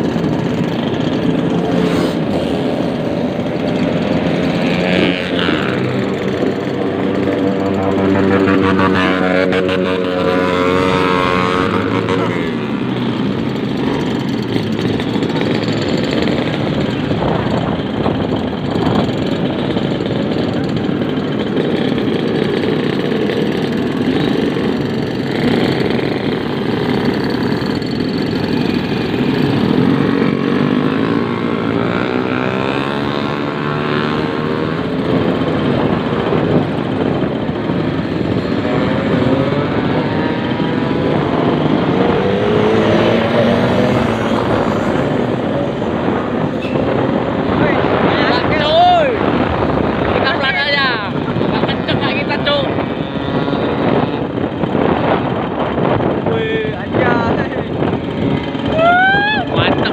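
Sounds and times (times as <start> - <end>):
heavy wind: 0.0 - 59.9
road rush: 0.0 - 59.9
two-stroke motorcycle engine: 0.0 - 59.9.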